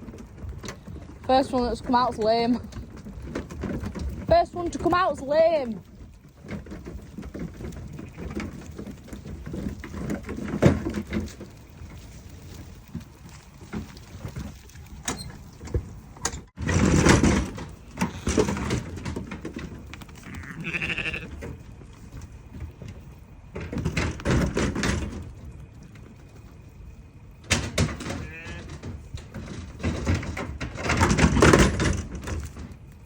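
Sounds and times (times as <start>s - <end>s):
lambs bleating: 20.2s - 21.3s, 28.1s - 28.7s.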